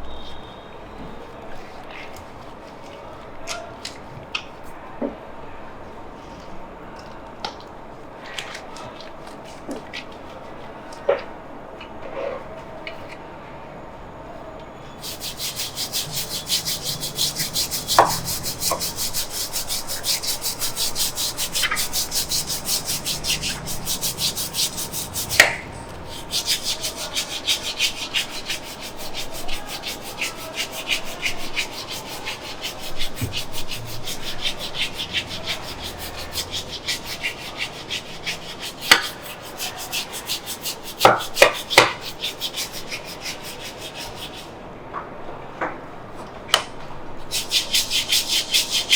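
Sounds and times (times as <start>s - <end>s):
hands rubbing in massage strokes: 15.0s - 44.5s, 47.3s - 48.9s.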